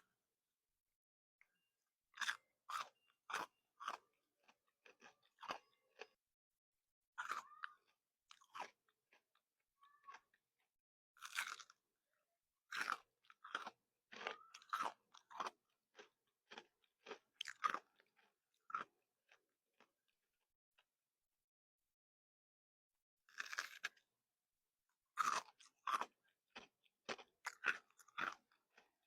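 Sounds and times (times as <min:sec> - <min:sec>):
candy crunching while chewed: 0:02.2 - 0:06.2, 0:07.2 - 0:09.4, 0:11.2 - 0:11.8, 0:12.7 - 0:19.9, 0:23.3 - 0:24.1, 0:25.2 - 0:29.0.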